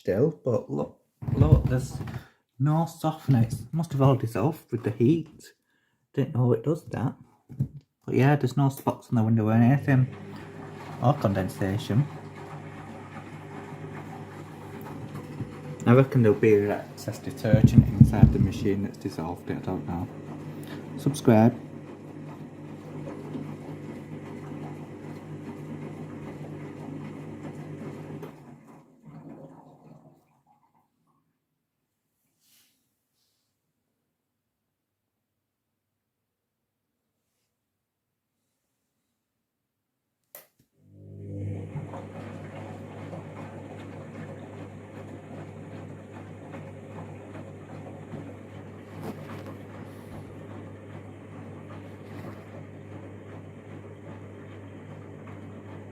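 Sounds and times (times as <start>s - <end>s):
washing machine drum humming: 1.2s - 2.3s, 9.9s - 30.2s, 41.0s - 55.9s.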